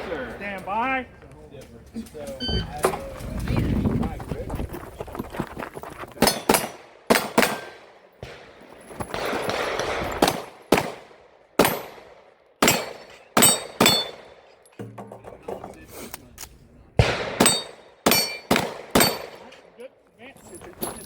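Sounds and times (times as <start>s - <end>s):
pistol shots: 6.2s - 14.4s, 17.0s - 19.6s.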